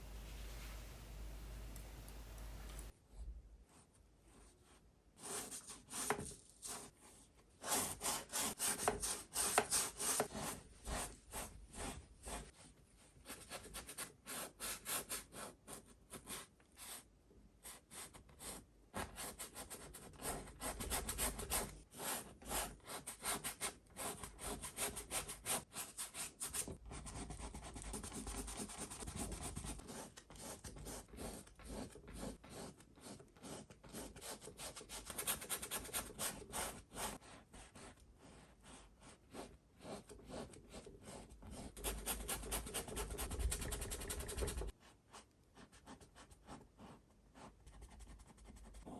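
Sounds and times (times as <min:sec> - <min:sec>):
paint brush scratching: 0:00.0 - 0:02.9.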